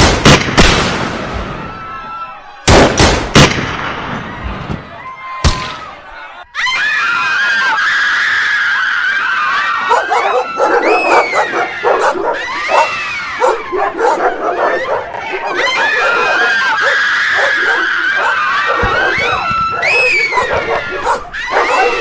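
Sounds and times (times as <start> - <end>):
shrill cries and yelps: 9.9 - 15.0, 15.7 - 22.0.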